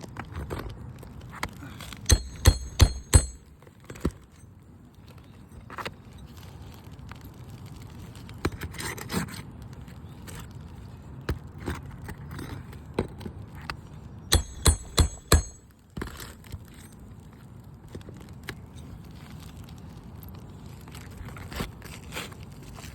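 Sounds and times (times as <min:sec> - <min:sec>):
hand tool scraping roof shingles: 0:01.8 - 0:03.4, 0:14.3 - 0:16.3
sharp metallic strikes: 0:02.1 - 0:03.4, 0:14.3 - 0:15.6.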